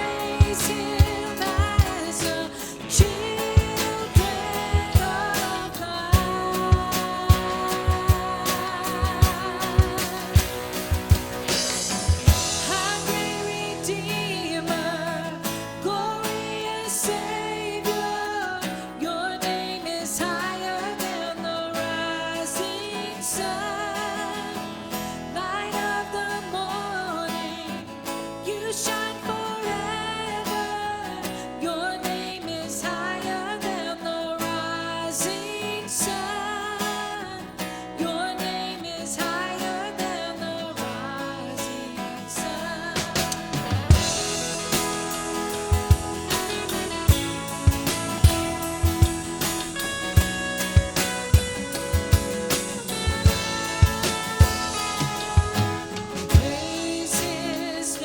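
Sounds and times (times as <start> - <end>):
drum kit: 0.0 - 14.8, 42.9 - 57.8
person singing melody: 0.0 - 19.5, 39.2 - 58.0
acoustic guitar chords: 0.0 - 58.0.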